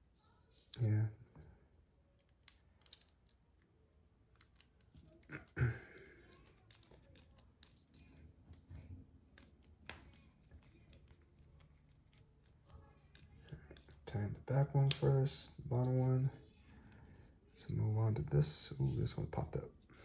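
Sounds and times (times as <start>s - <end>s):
screwdriver clicks and taps: 2.2s - 3.7s.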